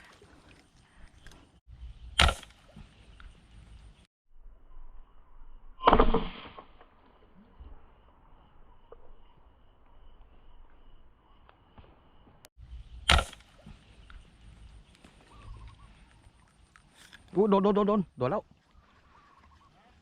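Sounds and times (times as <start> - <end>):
arrow shot snap: 2.1 - 2.8, 5.8 - 6.8, 13.0 - 13.8
faint insect drone: 4.4 - 5.8, 6.8 - 13.0.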